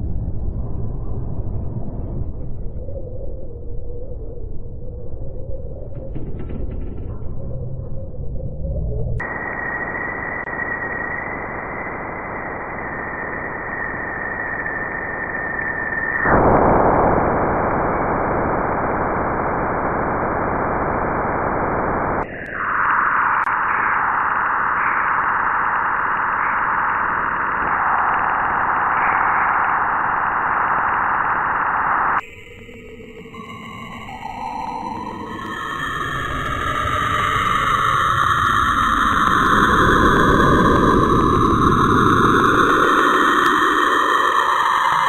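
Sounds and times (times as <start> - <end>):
static-like hiss: 16.4 - 32.2.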